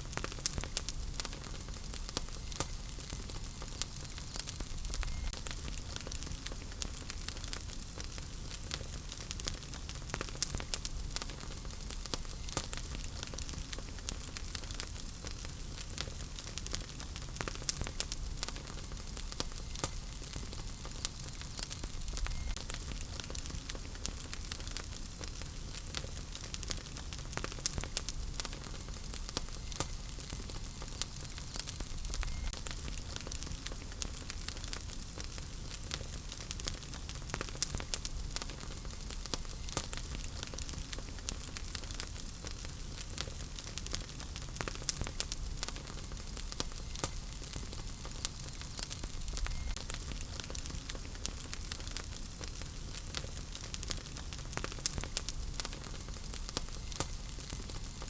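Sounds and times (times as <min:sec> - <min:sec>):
wood fire crackling: 0:00.0 - 0:58.0.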